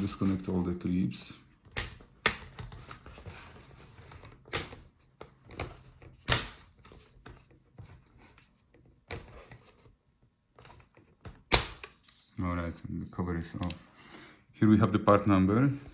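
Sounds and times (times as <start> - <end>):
plastic clips snapping loose: 1.7 - 2.8.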